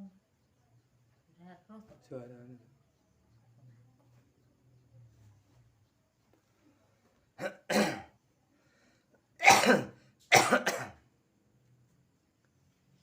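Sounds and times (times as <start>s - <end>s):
person coughing: 7.4s - 8.1s, 9.4s - 11.0s.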